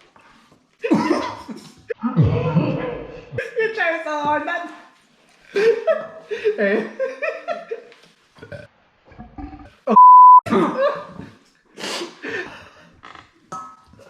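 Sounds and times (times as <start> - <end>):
censor bleep: 9.9 - 10.4.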